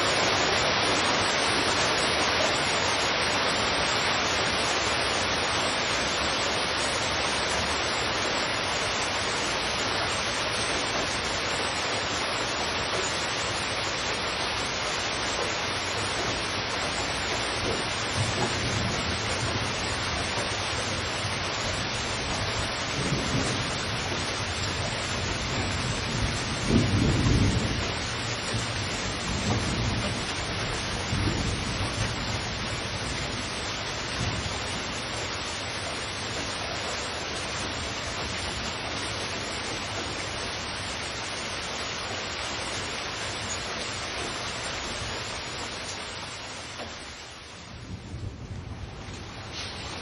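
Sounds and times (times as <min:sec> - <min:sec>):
heavy rain: 0:00.0 - 0:50.0
thunder rumbling: 0:08.7 - 0:42.7, 0:47.4 - 0:50.0.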